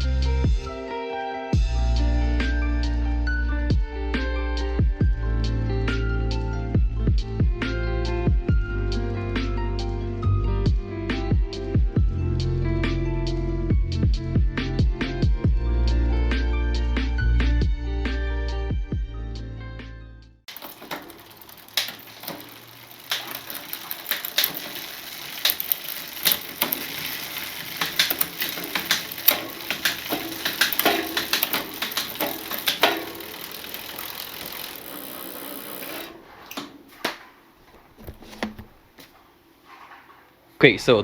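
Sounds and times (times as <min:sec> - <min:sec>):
bike chain rattling over cassette: 0:20.5 - 0:36.2
sharp derailleur clicks: 0:20.5 - 0:36.6.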